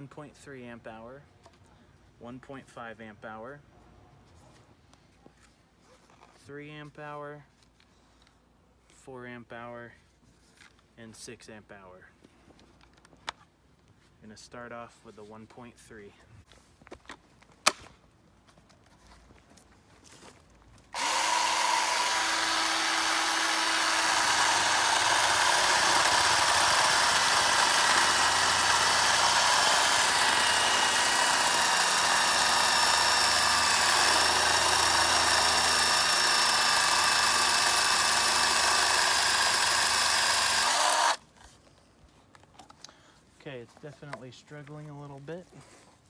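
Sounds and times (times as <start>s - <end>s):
battery chainsaw whining: 21.0s - 41.2s.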